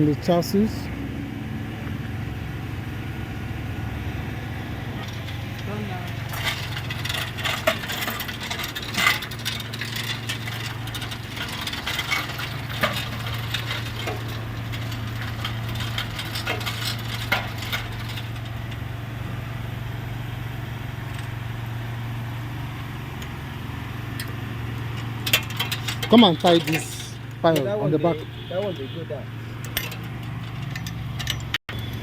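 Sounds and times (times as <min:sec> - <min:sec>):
metallic clinks and rattles: 0:05.0 - 0:18.8, 0:29.6 - 0:32.0.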